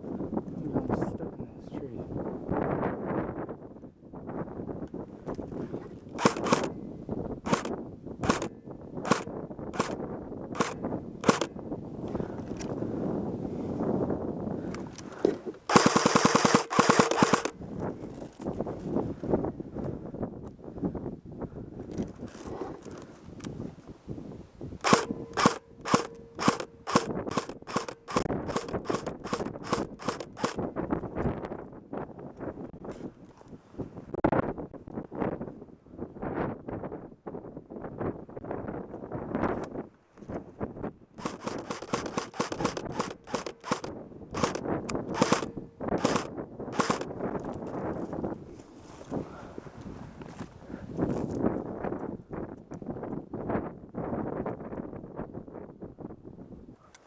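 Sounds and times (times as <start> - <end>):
airsoft gun shots: 6.2 - 6.7, 15.7 - 17.6, 24.8 - 30.6, 41.2 - 47.1.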